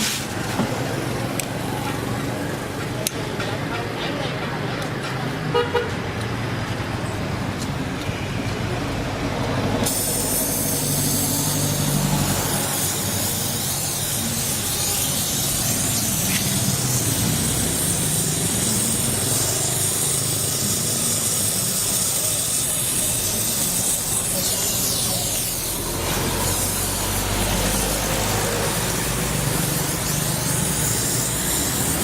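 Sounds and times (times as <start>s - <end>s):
gas torch hissing: 9.8s - 32.0s.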